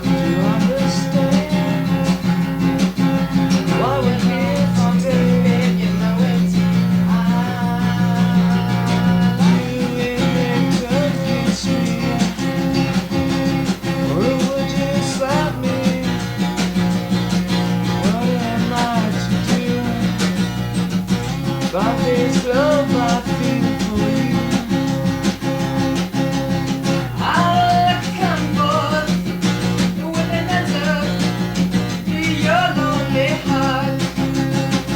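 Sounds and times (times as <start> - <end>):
gliding bent guitar notes: 0.0 - 34.9
strummed acoustic guitar chords: 0.0 - 34.9.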